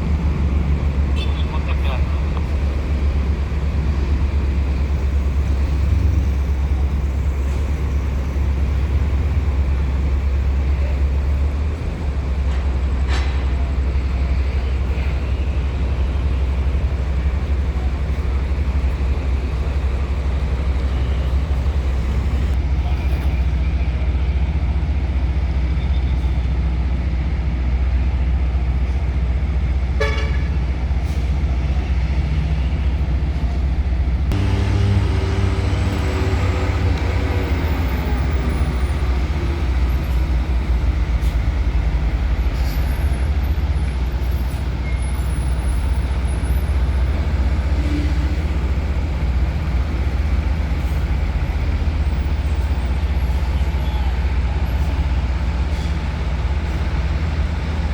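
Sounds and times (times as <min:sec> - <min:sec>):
truck and bus engines rumbling: 0:00.0 - 0:57.9
engine note falling in pitch: 0:34.3 - 0:38.2.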